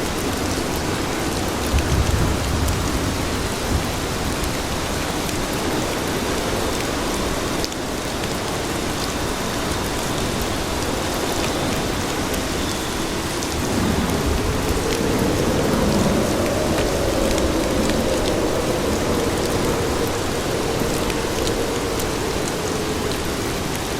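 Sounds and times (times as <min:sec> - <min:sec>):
rain hissing on streets: 0:00.0 - 0:23.9
deep rushing sound: 0:13.3 - 0:23.9.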